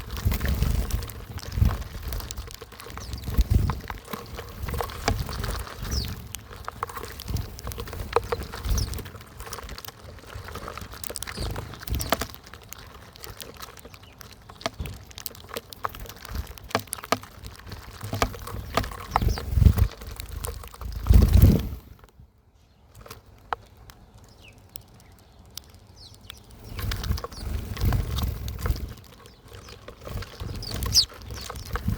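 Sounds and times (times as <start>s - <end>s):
wings fluttering: 0.0s - 22.1s, 22.9s - 31.9s
birds pecking seeds: 0.0s - 31.9s
high bird chirps: 29.3s - 31.9s.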